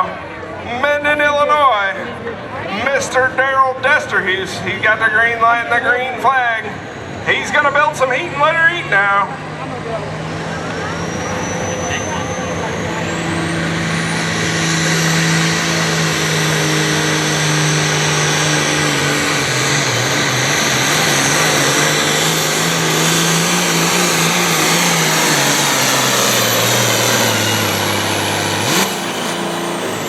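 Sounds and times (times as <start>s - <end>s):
diesel tractor engine under load: 0.0s - 30.0s
turbo whine: 10.4s - 30.0s.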